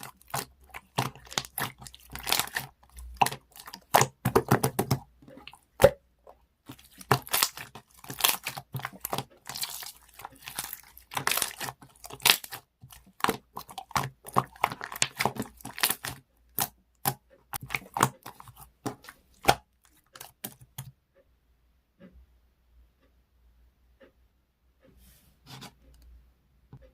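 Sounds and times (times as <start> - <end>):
slime crackling and popping: 0.0 - 6.0, 6.7 - 20.8.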